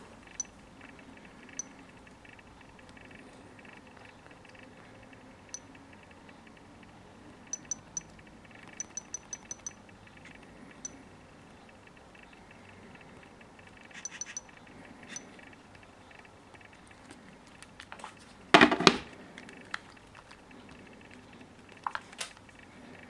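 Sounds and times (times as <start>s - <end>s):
hard objects clicking and clinking: 7.5s - 8.1s, 8.8s - 9.8s.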